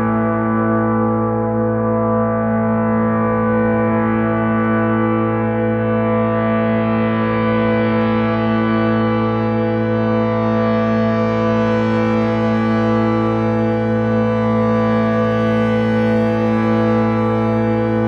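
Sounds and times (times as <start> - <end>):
synthesized meditation drone: 0.0 - 18.0.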